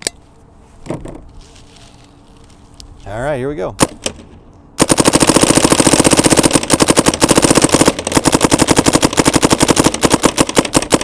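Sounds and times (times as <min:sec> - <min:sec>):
paintball gun rapid firing: 0:03.8 - 0:04.2, 0:04.8 - 0:11.0.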